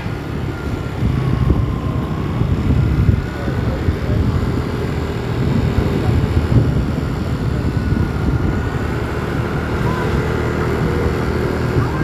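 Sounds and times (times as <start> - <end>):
vehicle engine and road noise: 0.0 - 12.0.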